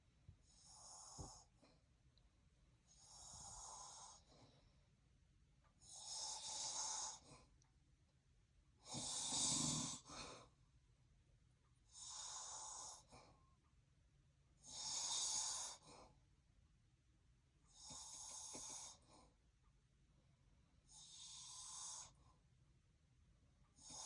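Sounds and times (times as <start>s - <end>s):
man snoring: 8.9s - 10.0s.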